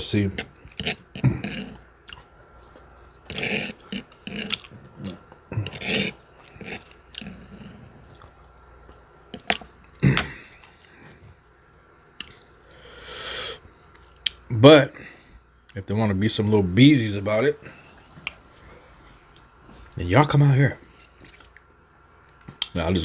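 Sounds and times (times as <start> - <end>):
person chewing food: 0.4 - 12.8, 20.9 - 22.7.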